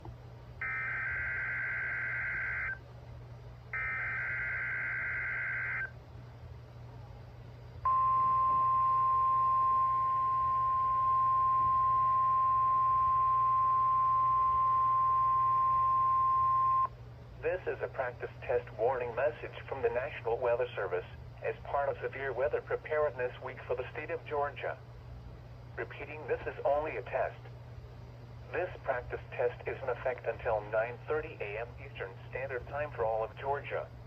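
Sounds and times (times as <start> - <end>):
low hum: 0.0 - 34.0
buzzing data tone bursts: 0.6 - 2.8, 3.8 - 5.9
long steady alarm tone: 0.6 - 2.8, 3.7 - 6.0, 7.8 - 16.9.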